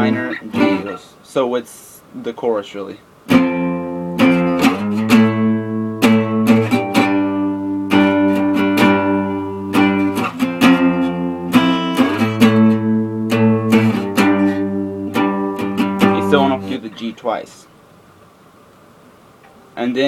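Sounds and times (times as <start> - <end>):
acoustic guitar strumming: 0.0 - 1.4, 3.2 - 17.6.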